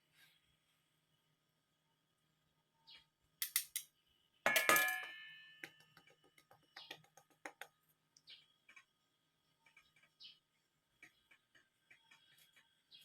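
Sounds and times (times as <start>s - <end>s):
spoon clinking against mixing bowl: 4.5s - 7.7s.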